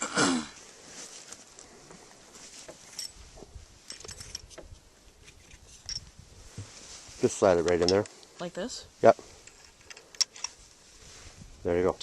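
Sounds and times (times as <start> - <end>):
small clicks of gear: 9.4 - 10.6.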